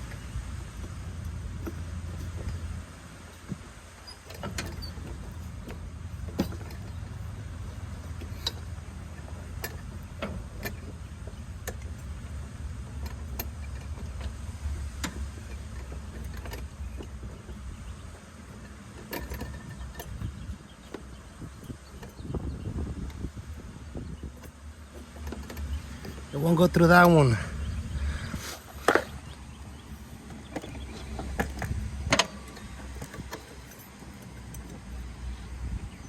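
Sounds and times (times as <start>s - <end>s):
low rumble: 27.3s - 33.4s.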